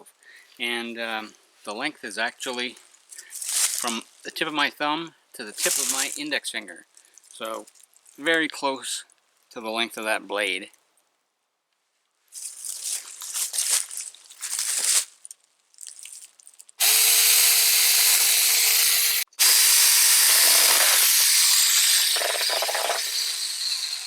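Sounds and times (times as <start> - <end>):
electric chainsaw motor cutting: 16.8 - 24.0.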